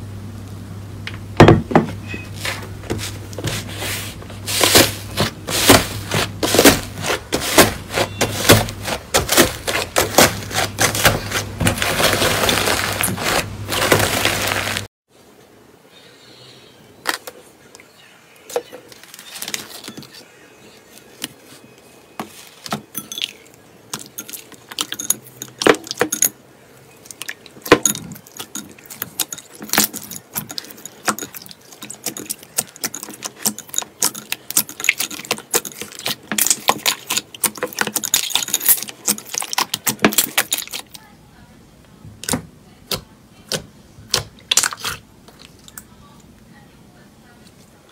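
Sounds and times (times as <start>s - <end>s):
slime crackling and popping: 31.1s - 41.0s, 44.1s - 45.5s.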